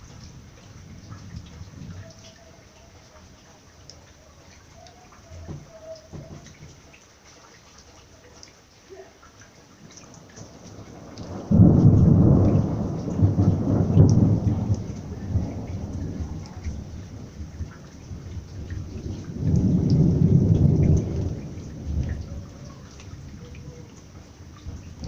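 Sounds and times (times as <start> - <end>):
steady rain: 0.0 - 25.0
water dripping: 0.0 - 25.0
thunder crack and rumble: 10.2 - 25.0.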